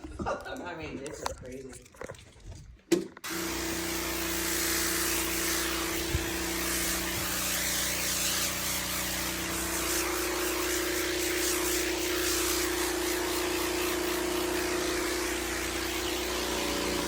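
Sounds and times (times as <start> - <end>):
motor-driven machine running: 5.6 - 17.0.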